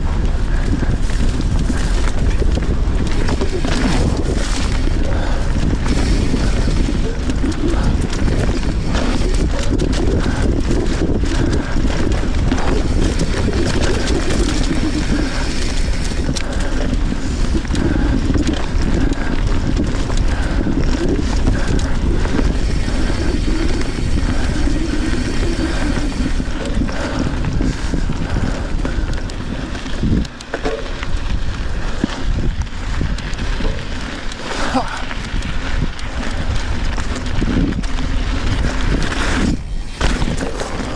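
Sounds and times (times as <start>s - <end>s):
bike clicks and rattles: 0.0s - 40.9s
bike tyres on sand: 0.0s - 40.9s
wind buffeting microphone: 0.0s - 40.9s.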